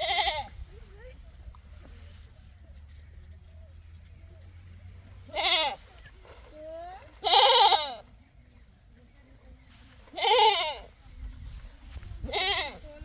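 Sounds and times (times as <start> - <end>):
goat bleating: 0.0 - 0.5, 5.3 - 5.8, 7.2 - 8.0, 10.1 - 10.9, 12.2 - 12.9.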